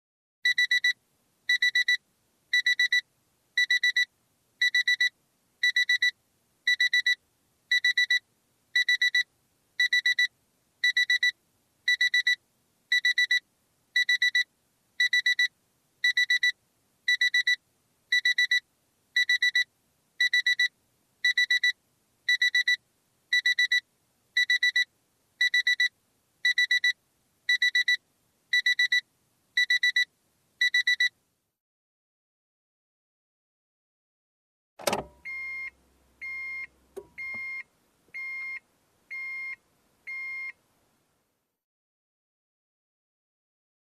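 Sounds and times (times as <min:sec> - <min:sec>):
car key warning chime beeping: 0:34.8 - 0:37.6.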